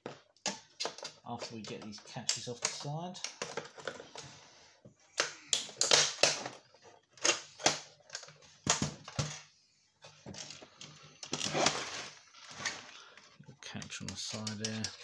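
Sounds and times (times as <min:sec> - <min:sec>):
plastic scraping on plastic: 0:10.0 - 0:15.0.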